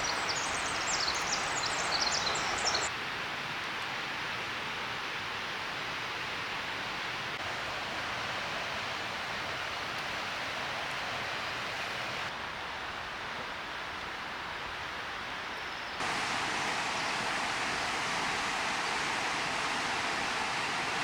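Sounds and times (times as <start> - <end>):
waterfall rushing: 0.0 - 2.9, 16.0 - 21.0.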